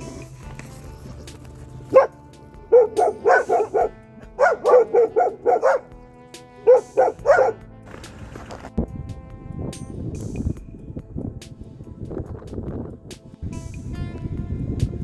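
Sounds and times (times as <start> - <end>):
background music: 0.0 - 15.0
dog barking: 1.9 - 5.9, 6.6 - 8.1.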